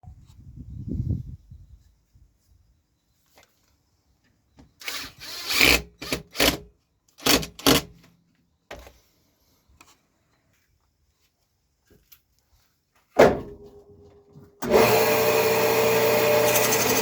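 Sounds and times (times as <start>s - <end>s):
power tool working wood: 14.6s - 17.0s.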